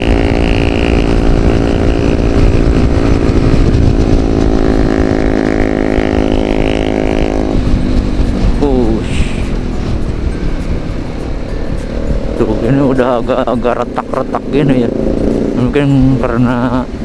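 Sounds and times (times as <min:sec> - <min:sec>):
road and wind noise: 0:00.0 - 0:17.0
vehicle engine running: 0:00.0 - 0:17.0.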